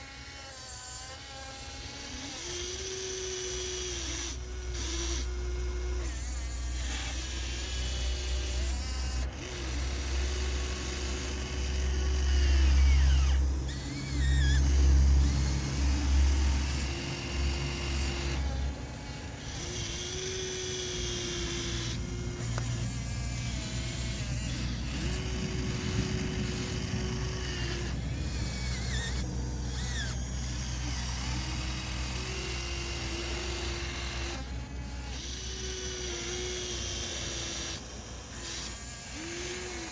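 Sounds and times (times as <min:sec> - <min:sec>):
small electric motors whining: 0:00.0 - 0:39.9
low hum: 0:09.0 - 0:36.4.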